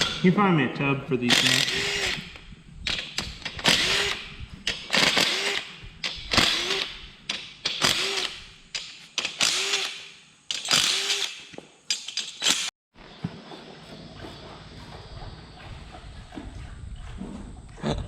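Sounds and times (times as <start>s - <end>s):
power tool motor bursts: 1.3s - 8.6s, 9.2s - 11.5s.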